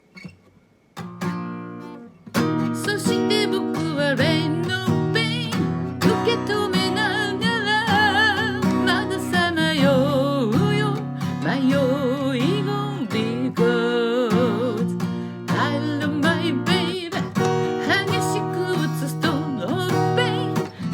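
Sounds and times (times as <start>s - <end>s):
guitar strumming: 1.0s - 20.9s
person singing: 2.7s - 20.9s.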